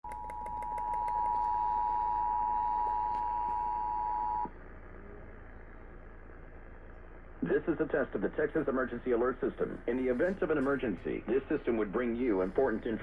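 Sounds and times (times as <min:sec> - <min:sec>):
two-tone alarm: 0:00.0 - 0:04.5
low hum and hiss: 0:00.1 - 0:13.0.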